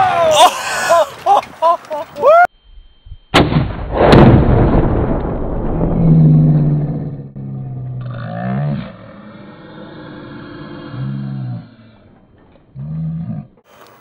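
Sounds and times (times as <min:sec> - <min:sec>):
explosion boom echoing: 0:03.3 - 0:07.7
rifle shot: 0:03.4 - 0:06.1.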